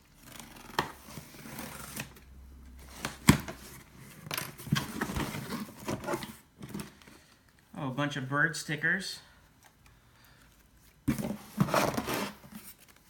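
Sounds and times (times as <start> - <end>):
cardboard rustling: 0.2 - 7.3, 10.5 - 13.0.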